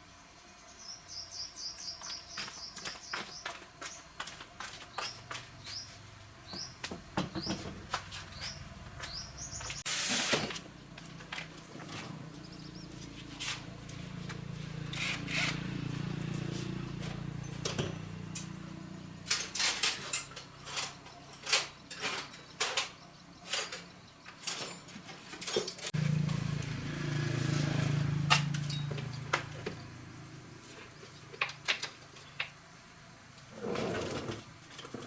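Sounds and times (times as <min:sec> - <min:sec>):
small motor running: 0:14.0 - 0:16.6
metallic clinks of tools: 0:17.4 - 0:18.6, 0:19.3 - 0:25.9, 0:28.4 - 0:29.3.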